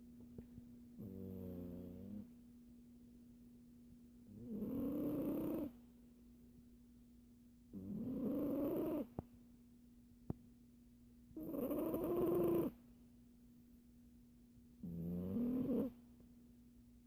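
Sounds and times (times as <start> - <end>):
cat snoring: 1.0 - 2.3, 4.3 - 5.8, 7.7 - 9.1, 11.4 - 12.8, 14.8 - 16.0.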